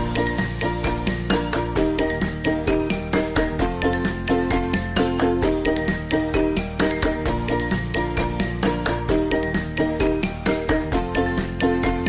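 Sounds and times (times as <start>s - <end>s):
upbeat instrumental music: 0.0s - 12.0s.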